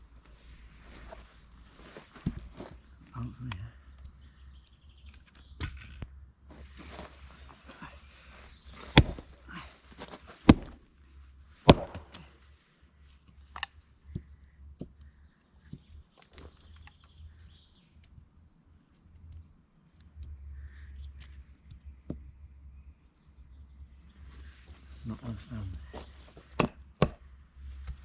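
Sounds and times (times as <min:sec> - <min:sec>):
small bird chirping: 0:00.0 - 0:10.4, 0:13.4 - 0:22.0.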